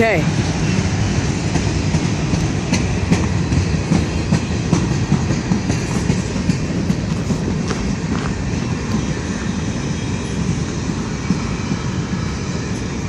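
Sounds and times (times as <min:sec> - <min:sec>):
freight train rumbling: 0:00.0 - 0:13.0
wheels clacking over rail joints: 0:01.4 - 0:09.3.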